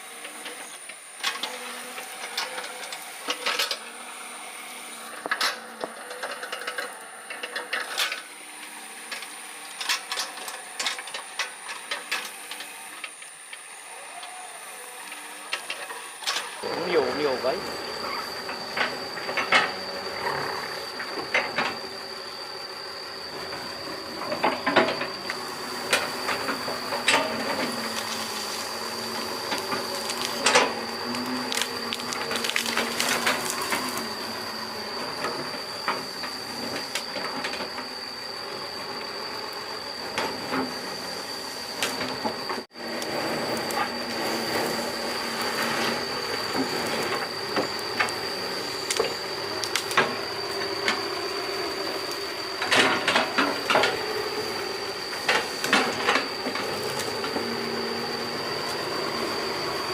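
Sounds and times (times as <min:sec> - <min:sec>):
excavator engine running: 0:00.0 - 0:59.9
high whine: 0:13.0 - 0:59.9.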